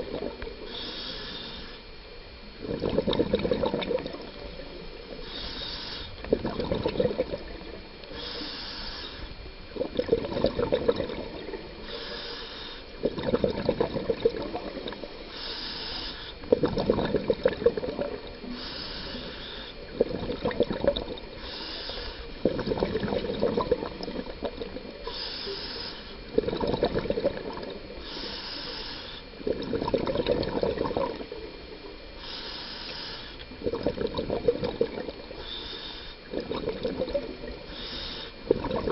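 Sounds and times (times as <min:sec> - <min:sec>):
diver inhaling through regulator: 0:00.0 - 0:01.9, 0:05.1 - 0:09.9, 0:10.7 - 0:24.4, 0:25.0 - 0:31.3, 0:32.2 - 0:38.9
exhaled bubbles rushing: 0:02.6 - 0:04.4, 0:06.2 - 0:07.9, 0:09.7 - 0:11.8, 0:13.0 - 0:15.2, 0:16.4 - 0:18.5, 0:19.8 - 0:21.4, 0:22.4 - 0:25.0, 0:26.2 - 0:28.0, 0:29.4 - 0:31.6, 0:33.5 - 0:35.4, 0:36.2 - 0:37.7, 0:38.4 - 0:38.9.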